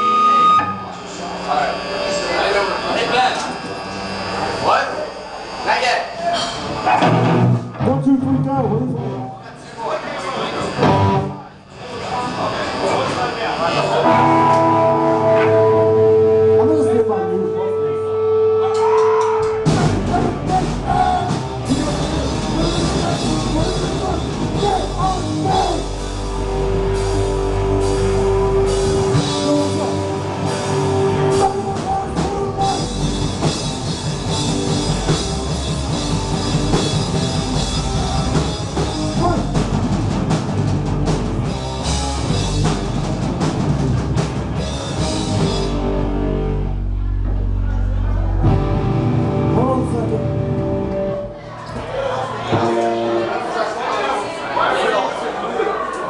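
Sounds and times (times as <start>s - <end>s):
live rock band playing: 0.0s - 9.3s, 10.3s - 53.6s.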